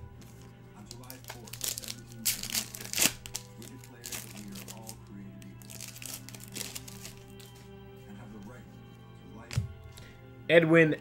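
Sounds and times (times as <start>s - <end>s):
faint background music: 0.0s - 11.0s
card pack wrappers crinkling: 0.3s - 7.7s.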